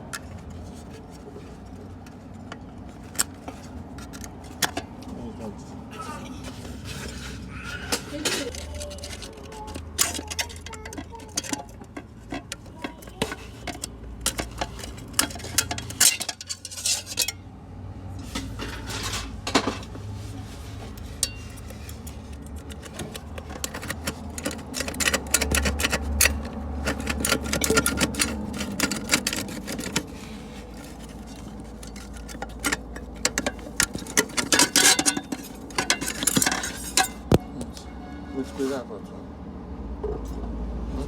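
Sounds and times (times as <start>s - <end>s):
metal parts clinking: 7.9s - 17.4s, 21.0s - 37.6s.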